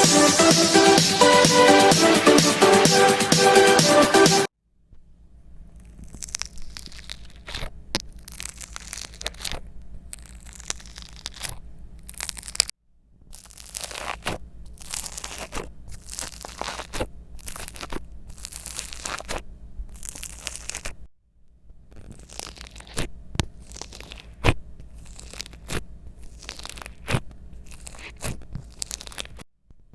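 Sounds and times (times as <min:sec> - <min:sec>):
low mains hum: 0:04.6 - 0:29.9
slime squishing and popping: 0:05.8 - 0:12.7, 0:13.3 - 0:21.1, 0:21.9 - 0:29.4.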